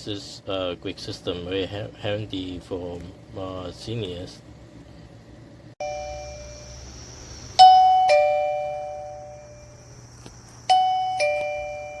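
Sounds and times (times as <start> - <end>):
ding-dong chime: 5.8 - 6.8, 7.6 - 9.8, 10.7 - 12.0.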